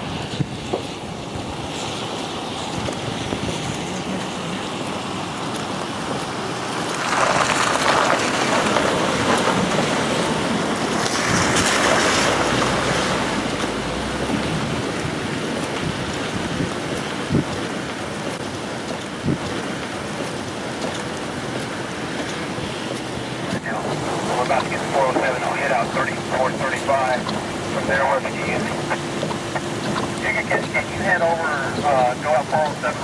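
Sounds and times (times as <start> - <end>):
wind blowing over microphone: 0.0 - 4.1, 6.9 - 17.9.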